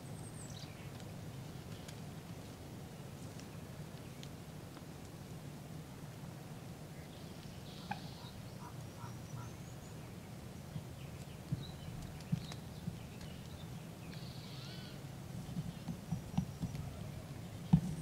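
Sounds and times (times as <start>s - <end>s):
low background hum: 0.0s - 18.0s
small clicks and rustles: 0.7s - 5.4s, 10.7s - 14.4s
birds chirping: 7.0s - 18.0s.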